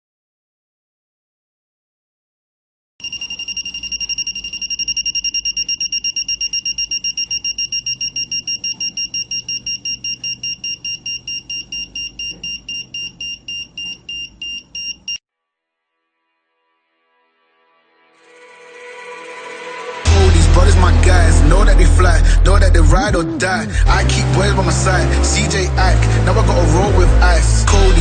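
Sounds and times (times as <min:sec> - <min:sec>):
high-pitched buzzer beeping: 0:03.0 - 0:15.2.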